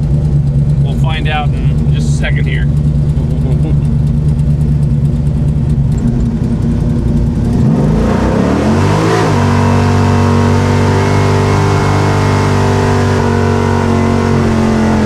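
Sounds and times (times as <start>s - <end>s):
engine rumbling at low revs: 0.0s - 15.0s
car engine revving hard: 5.7s - 15.0s.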